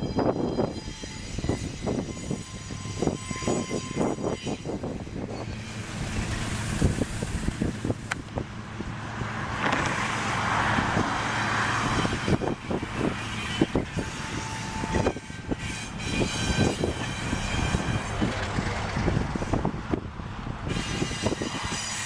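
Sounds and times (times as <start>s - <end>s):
thin squeal: 0.0s - 7.4s, 11.9s - 18.7s
train rumble: 0.0s - 22.0s
wheels clanking: 4.5s - 8.5s.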